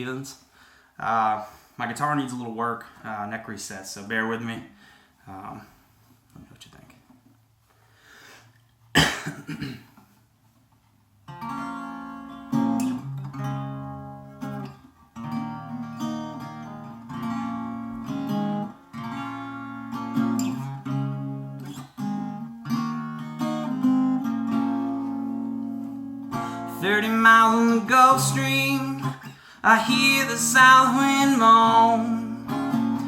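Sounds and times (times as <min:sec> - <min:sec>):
guitar strummed in chords: 0:11.3 - 0:33.0.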